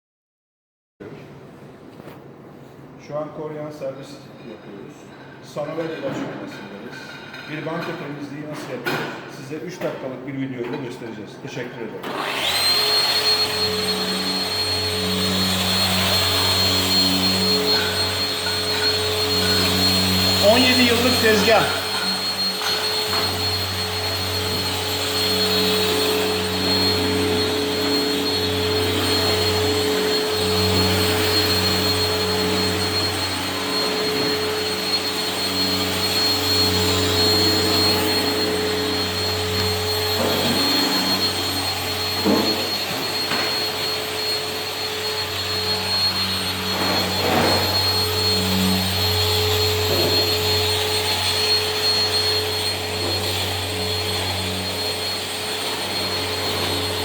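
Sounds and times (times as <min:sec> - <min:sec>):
orbital sander whining: 0:12.1 - 0:57.0.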